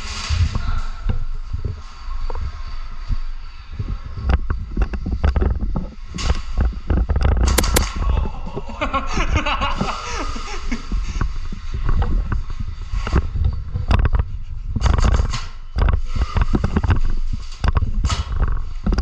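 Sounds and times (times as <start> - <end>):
wind rumble on microphone: 0.0 - 19.0
airsoft gunfire: 7.6 - 7.8.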